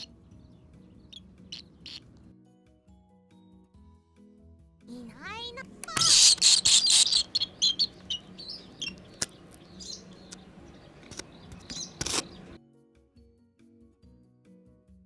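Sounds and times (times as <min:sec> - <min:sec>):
swallows chirping: 0:00.0 - 0:02.1, 0:06.0 - 0:12.6.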